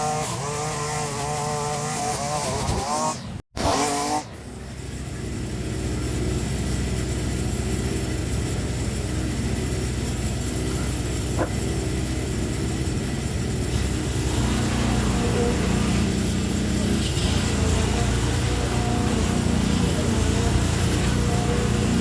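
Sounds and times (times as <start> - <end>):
small petrol engine running: 0.0 - 22.0.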